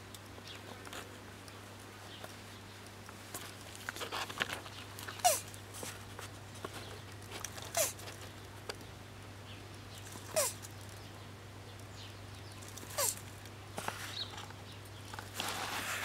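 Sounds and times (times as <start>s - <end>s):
tortoise mating calls: 3.8s - 14.5s.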